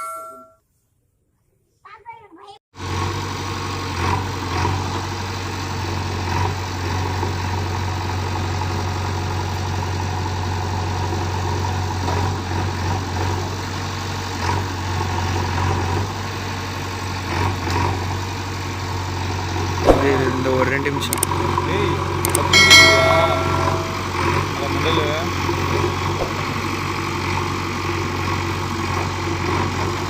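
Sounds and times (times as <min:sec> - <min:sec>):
diesel engine running: 0:02.8 - 0:30.0.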